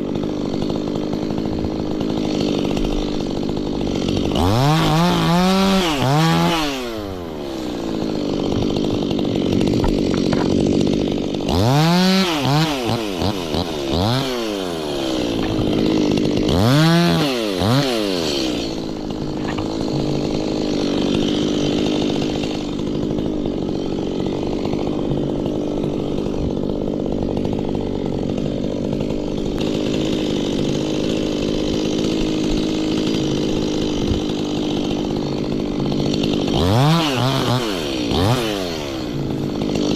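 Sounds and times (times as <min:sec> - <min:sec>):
chainsaw revving: 0:00.0 - 0:39.9.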